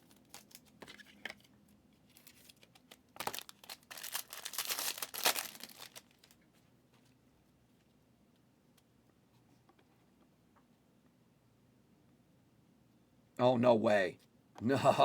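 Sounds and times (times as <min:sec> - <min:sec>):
card pack wrapper crinkling and tearing: 0:00.0 - 0:01.5, 0:02.1 - 0:06.4.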